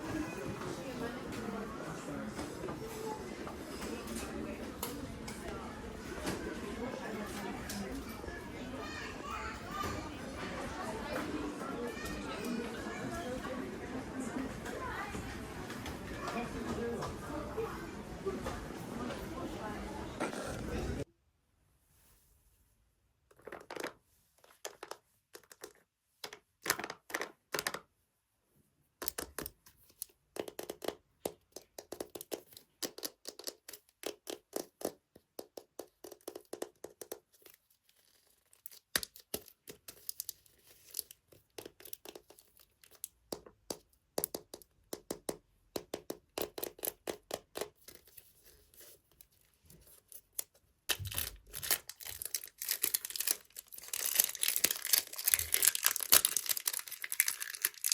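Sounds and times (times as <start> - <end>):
toy packaging tearing and crinkling: 37.3 - 43.1, 49.2 - 57.9.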